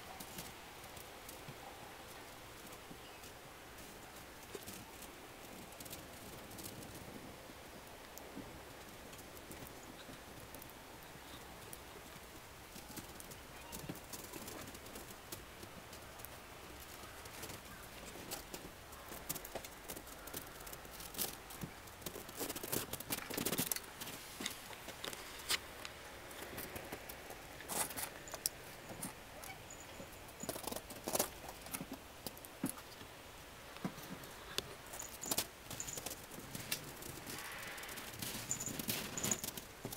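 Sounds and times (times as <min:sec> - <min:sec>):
cat paws crunching on snow: 0:08.0 - 0:33.0, 0:33.8 - 0:39.9.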